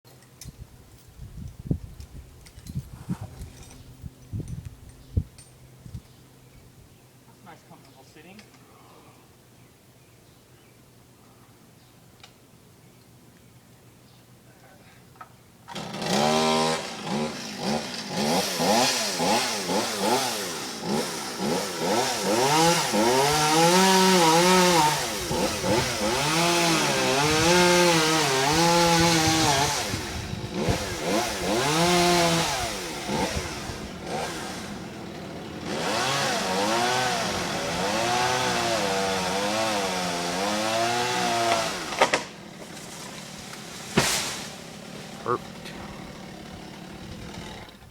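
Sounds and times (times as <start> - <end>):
chainsaw cutting: 15.6 - 47.9.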